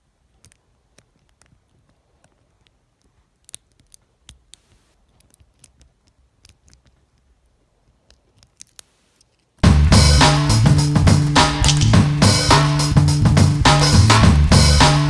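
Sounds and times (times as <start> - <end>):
lock pick clicking against pins: 0.3 - 7.3, 8.1 - 8.9, 11.6 - 12.0.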